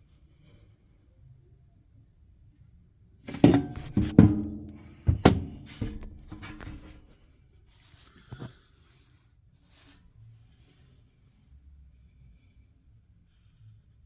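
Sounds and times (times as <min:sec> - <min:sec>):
metal clanks and knocks: 0:03.3 - 0:07.0.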